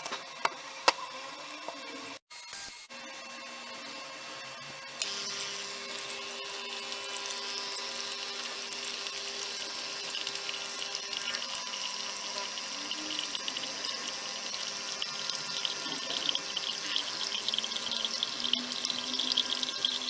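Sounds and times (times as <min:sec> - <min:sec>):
espresso machine pump buzzing: 0:05.0 - 0:20.0
water hissing: 0:07.4 - 0:20.0.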